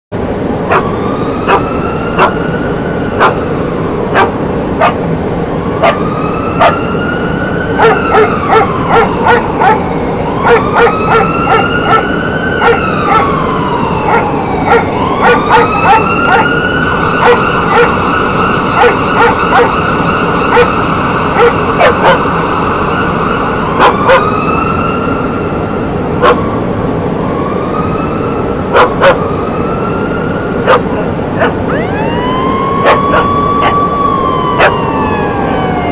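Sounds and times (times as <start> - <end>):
warning siren wailing: 0.2 - 35.9
dog barking: 0.7 - 0.9, 1.5 - 2.4, 3.2 - 3.4, 4.1 - 5.0, 5.8 - 6.0, 6.6 - 6.8, 7.8 - 9.8, 10.4 - 13.3, 14.1 - 16.5, 17.2 - 18.0, 18.8 - 19.8, 20.5 - 20.8, 21.4 - 22.3, 23.8 - 24.3, 26.2 - 26.5, 28.7 - 29.2, 30.6 - 31.8, 32.8 - 33.8, 34.6 - 34.8.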